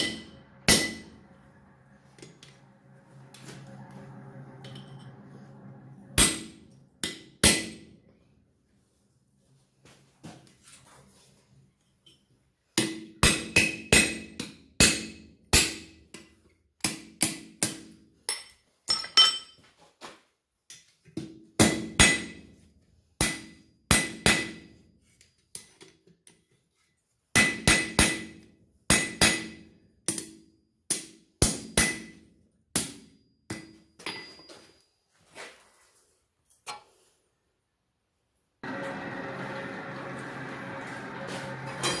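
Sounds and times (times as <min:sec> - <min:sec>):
hammer striking steel on anvil: 0:00.0 - 0:01.6, 0:04.6 - 0:07.9, 0:41.6 - 0:42.0.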